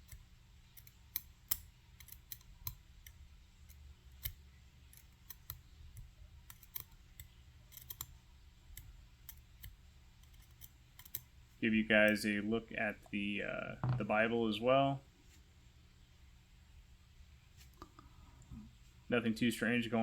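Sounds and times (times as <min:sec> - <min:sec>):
small clicks of lock parts handled: 0:00.8 - 0:08.1, 0:08.8 - 0:11.3.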